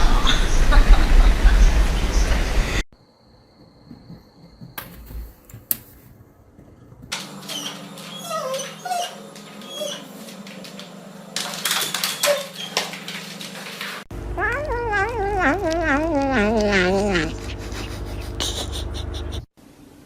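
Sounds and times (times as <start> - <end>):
small animal whimpering: 14.4 - 19.4.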